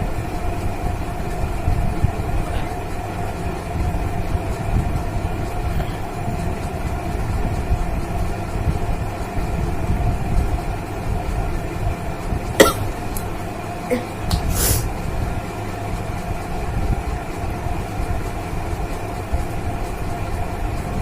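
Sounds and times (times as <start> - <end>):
woman's cough-like burst of breath: 12.6 - 12.9.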